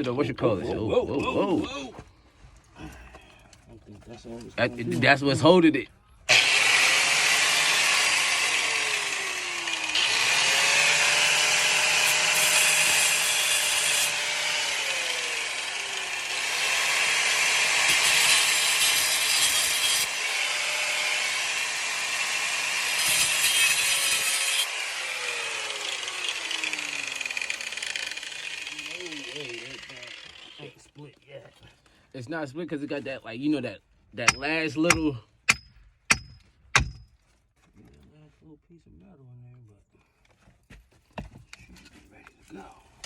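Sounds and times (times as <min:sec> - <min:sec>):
power tool cutting metal: 0:06.3 - 0:30.8.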